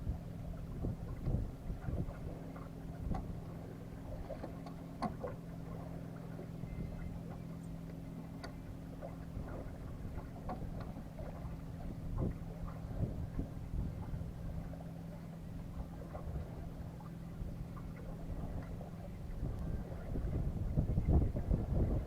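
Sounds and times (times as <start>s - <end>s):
steady low hum: 0.0s - 22.0s
wind and water rumbling: 0.0s - 22.0s
light knocks and clicks: 4.2s - 5.4s, 7.8s - 8.6s.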